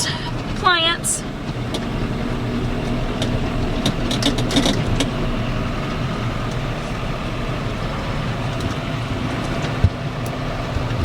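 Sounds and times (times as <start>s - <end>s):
vehicle engine and road noise: 0.0s - 11.0s.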